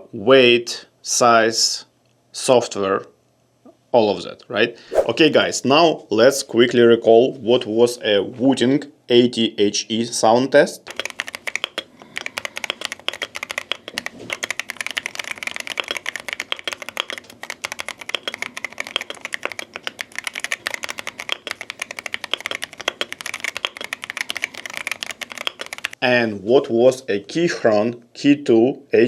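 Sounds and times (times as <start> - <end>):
mechanical keyboard typing: 10.9 - 26.0.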